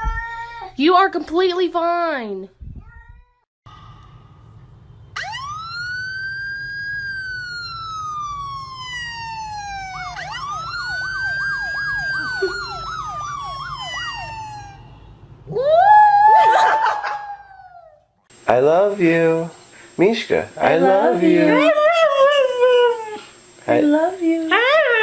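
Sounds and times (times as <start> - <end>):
emergency vehicle siren wailing: 5.1 - 17.8
yelping siren tone: 5.1 - 18.1, 21.0 - 23.2.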